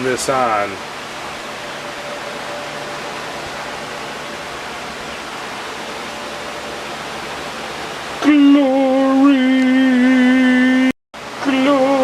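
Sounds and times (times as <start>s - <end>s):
steady rushing hiss: 0.0s - 12.0s.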